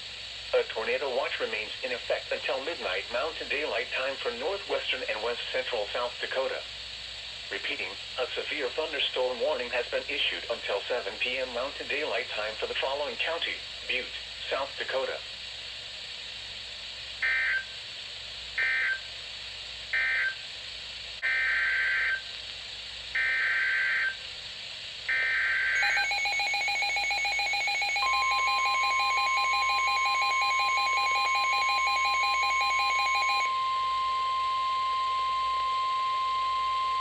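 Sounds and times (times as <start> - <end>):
screechy digital data bursts: 25.1 - 33.5
pulsing two-tone attention signal: 25.1 - 37.0
steady single-pitch alert tone: 25.1 - 37.0.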